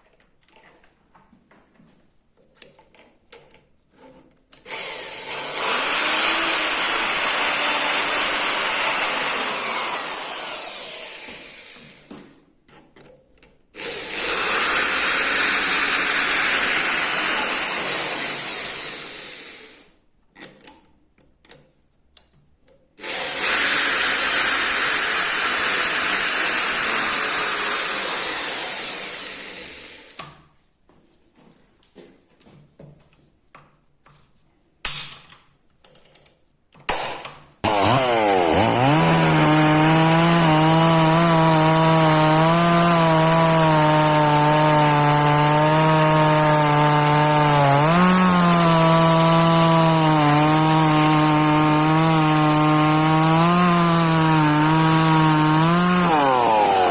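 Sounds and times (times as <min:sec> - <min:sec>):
power tool grinding whine: 0:04.7 - 0:12.1, 0:13.8 - 0:19.8, 0:23.0 - 0:30.2, 0:37.6 - 0:56.9.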